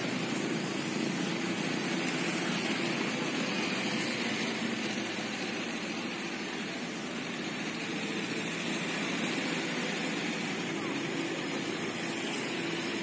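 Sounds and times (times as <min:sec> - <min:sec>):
heavy machinery engine rumble: 0:00.0 - 0:13.0
hissing haze: 0:00.0 - 0:13.0.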